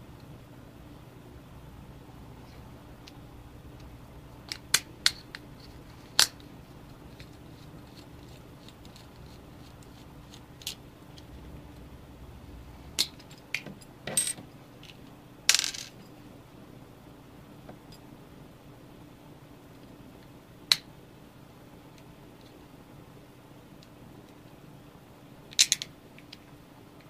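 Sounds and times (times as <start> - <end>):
small parts clicking and tapping: 4.5 - 11.3, 25.5 - 26.5.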